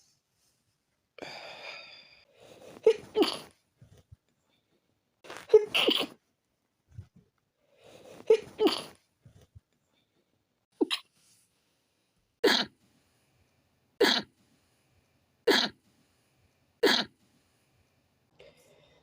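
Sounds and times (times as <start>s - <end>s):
person sneezing: 2.7s - 3.5s, 5.3s - 6.2s, 8.1s - 9.0s, 12.4s - 12.7s, 14.0s - 14.3s, 16.8s - 17.1s.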